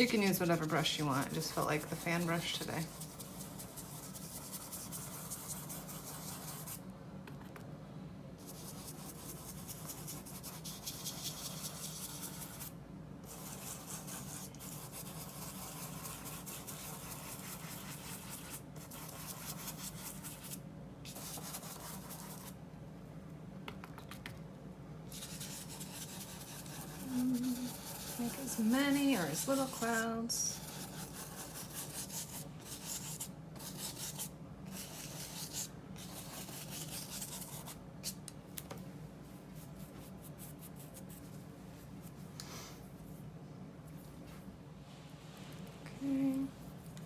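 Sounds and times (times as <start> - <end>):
brush scratching on paper: 0.0 - 6.8, 8.4 - 22.6, 25.1 - 38.2, 39.6 - 41.4.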